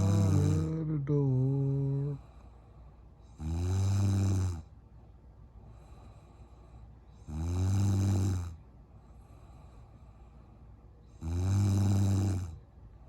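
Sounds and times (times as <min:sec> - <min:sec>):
woman snoring: 0:00.0 - 0:02.2, 0:03.4 - 0:04.6, 0:07.3 - 0:08.5, 0:11.2 - 0:12.6.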